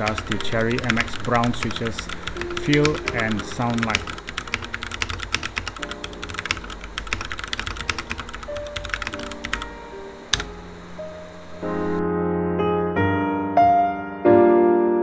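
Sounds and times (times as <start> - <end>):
mechanical keyboard typing: 0.0 - 12.0
soft background music: 0.0 - 12.8.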